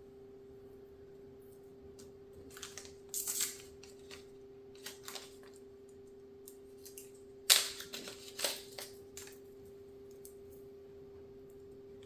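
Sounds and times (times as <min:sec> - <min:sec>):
faint steady hum: 0:00.0 - 0:12.0
packaging crackling snap: 0:02.5 - 0:05.6, 0:06.4 - 0:09.5
packaging clicks and rustles: 0:02.5 - 0:05.7, 0:06.8 - 0:09.4.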